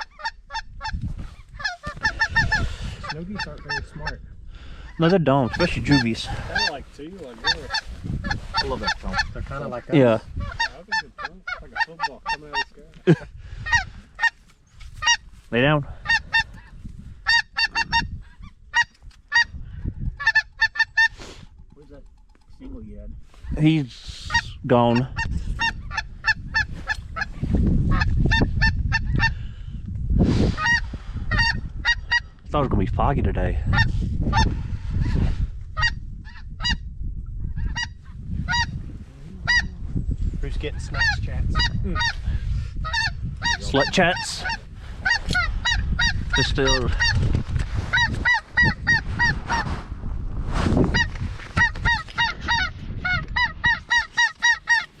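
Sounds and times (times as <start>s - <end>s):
geese honking: 0.0s - 4.2s, 5.0s - 12.8s, 13.6s - 15.3s, 16.0s - 19.6s, 20.2s - 21.2s, 30.5s - 32.3s, 37.6s - 38.8s, 39.4s - 39.8s, 40.8s - 42.2s, 42.8s - 47.2s, 47.9s - 49.7s, 50.9s - 55.0s.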